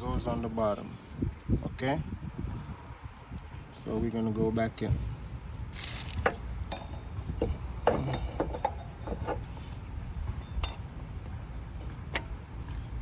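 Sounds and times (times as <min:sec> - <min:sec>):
metal clinks and scrapes: 0:05.7 - 0:09.8.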